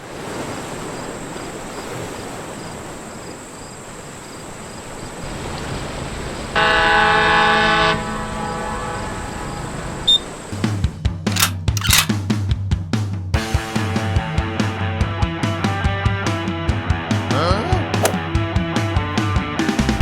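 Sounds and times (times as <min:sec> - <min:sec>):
loud horn blast: 0:06.5 - 0:09.8.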